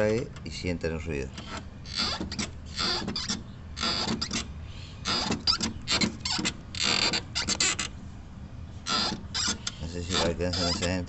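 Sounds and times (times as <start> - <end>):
clutch fork creaking: 8.9 - 11.0.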